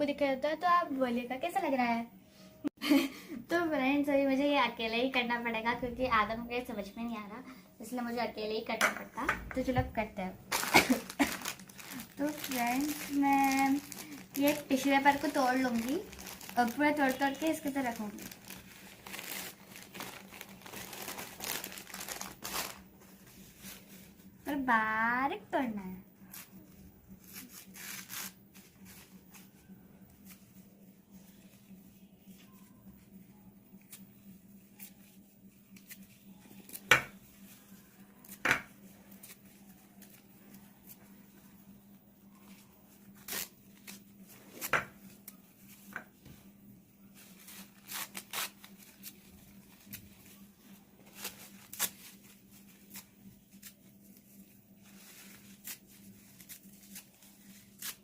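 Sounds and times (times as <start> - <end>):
tissue paper tearing: 10.5 - 24.1, 26.2 - 32.7, 42.5 - 45.8, 47.1 - 58.0.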